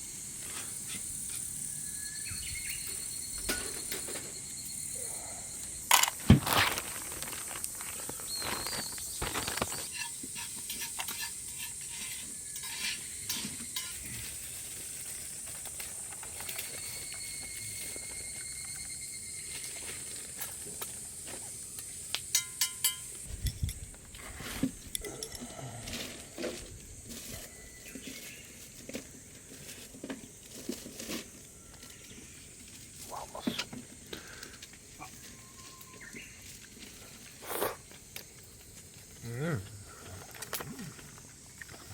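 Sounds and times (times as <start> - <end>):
food sizzling in a pan: 8.3 - 15.6
cookware clinking: 22.3 - 23.8.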